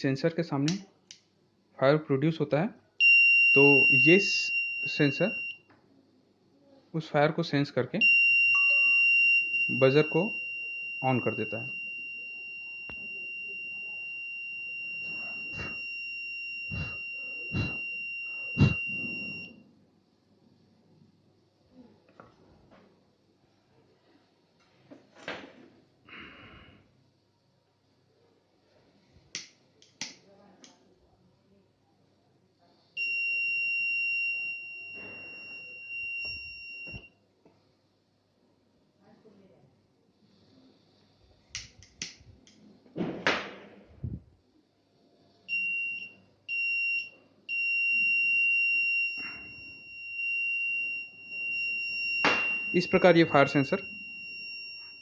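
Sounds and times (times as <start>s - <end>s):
alarm buzzer buzz: 3.0s - 5.6s, 8.0s - 19.5s, 33.0s - 37.1s, 45.5s - 55.0s.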